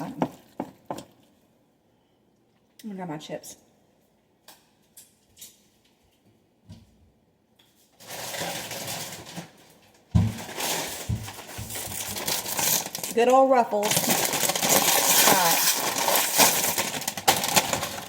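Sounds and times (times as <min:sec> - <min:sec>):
plastic chip bag crinkling: 0:08.0 - 0:18.0.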